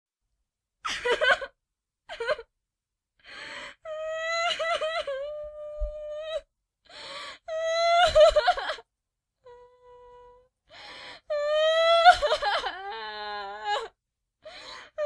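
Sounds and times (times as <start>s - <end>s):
woman sobbing and wailing: 0.9s - 2.5s, 3.8s - 6.5s, 7.4s - 8.9s, 11.3s - 14.0s
gasping breath: 3.2s - 3.9s, 6.9s - 7.5s, 10.7s - 11.3s, 14.4s - 15.0s.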